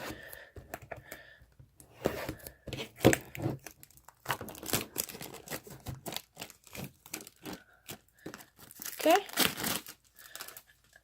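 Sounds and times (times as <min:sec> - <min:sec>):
packaging tearing and crinkling: 0:03.0 - 0:11.0.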